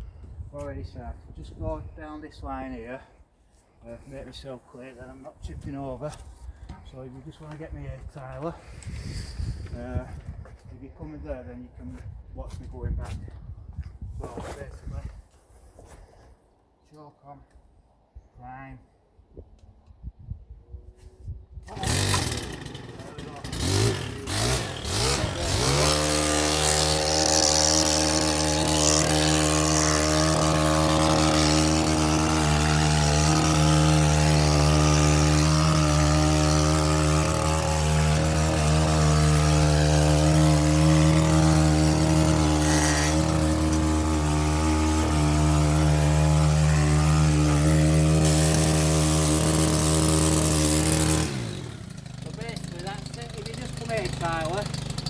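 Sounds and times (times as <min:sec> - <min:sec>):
small engine running high: 0:21.7 - 0:55.0.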